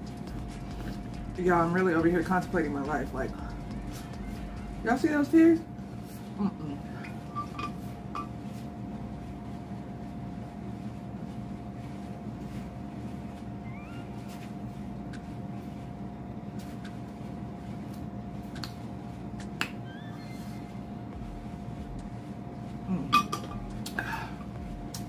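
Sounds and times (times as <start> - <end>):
steady hum: 0.0 - 25.0
mouth clicks and smacks eating: 18.5 - 18.8.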